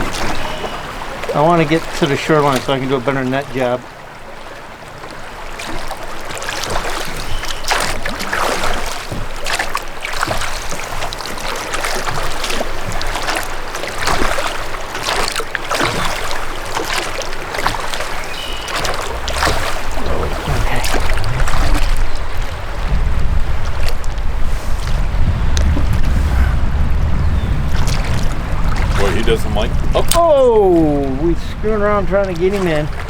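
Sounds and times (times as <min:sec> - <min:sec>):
water splashing around a boat: 0:00.0 - 0:33.0
wind rumbling on microphone: 0:18.1 - 0:33.0.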